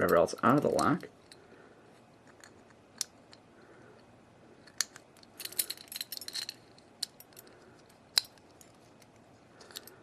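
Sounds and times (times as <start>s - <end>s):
padlock rattling: 4.6s - 10.0s.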